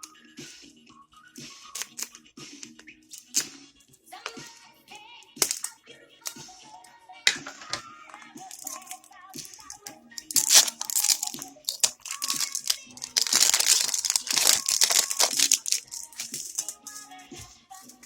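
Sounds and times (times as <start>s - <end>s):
wrapper crinkling and tearing: 8.5s - 9.0s, 10.2s - 16.9s.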